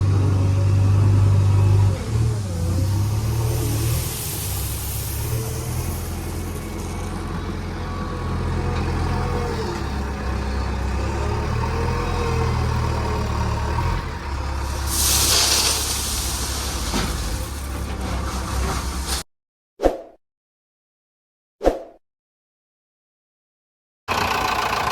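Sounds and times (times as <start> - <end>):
backhoe diesel engine running: 0.0 - 19.2, 24.1 - 24.9
loud hiss: 2.9 - 7.0, 14.7 - 17.6.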